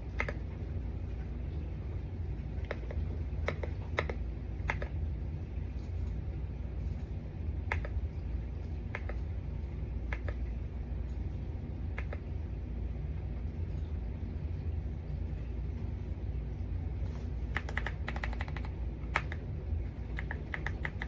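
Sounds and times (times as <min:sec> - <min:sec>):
steady low hum: 0:00.0 - 0:21.0
keyboard key clicks: 0:08.9 - 0:09.3, 0:17.6 - 0:19.4, 0:20.1 - 0:21.0.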